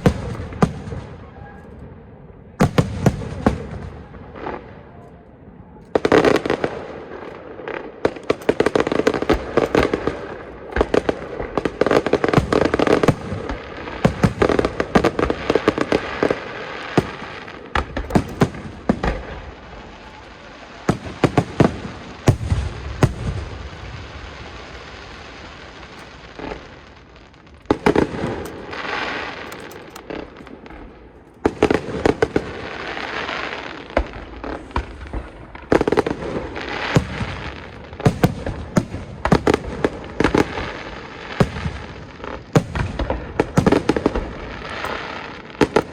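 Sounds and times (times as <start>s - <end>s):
fireworks bursting: 0.0s - 5.0s, 5.7s - 45.9s
fireworks crackling: 0.0s - 45.9s.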